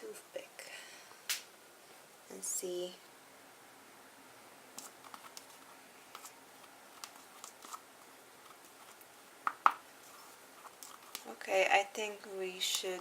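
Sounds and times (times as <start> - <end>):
toothpick stirring wet mixture: 4.8 - 9.1, 10.0 - 11.4, 12.5 - 13.0.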